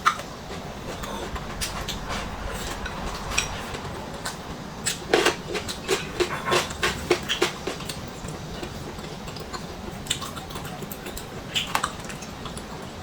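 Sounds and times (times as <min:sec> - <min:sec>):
chewing crunchy food: 0:04.2 - 0:13.0.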